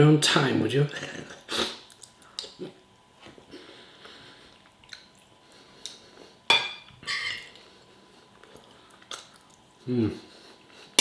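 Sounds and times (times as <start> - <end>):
cutlery clinks: 6.5 - 6.9.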